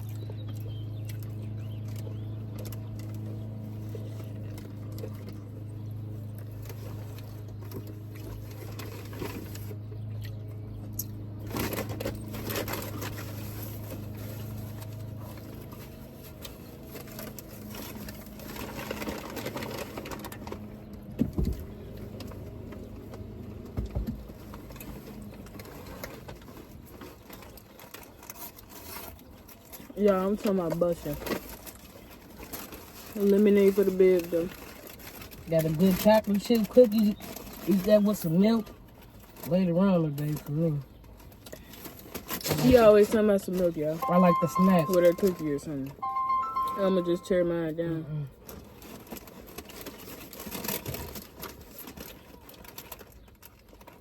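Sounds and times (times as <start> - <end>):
chewing: 0.0 - 9.0
rustle of sandwich wrappers: 0.0 - 54.0.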